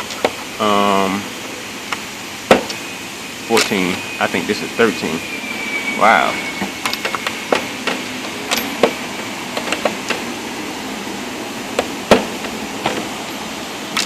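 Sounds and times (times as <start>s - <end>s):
background hiss: 0.0s - 14.0s
metal sockets clinking: 3.6s - 3.8s, 6.8s - 9.0s.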